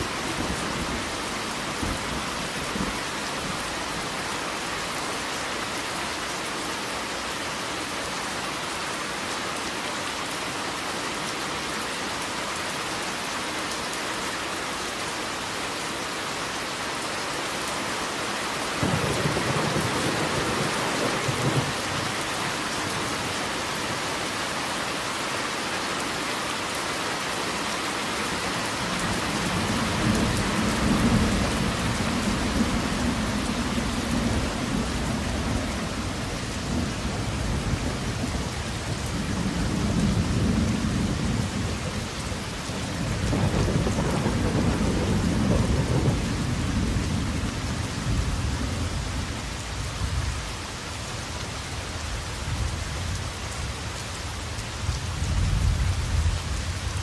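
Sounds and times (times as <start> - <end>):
steady rain hissing: 0.0 - 57.0
rolling thunder rumbling: 18.8 - 22.2, 42.9 - 49.2.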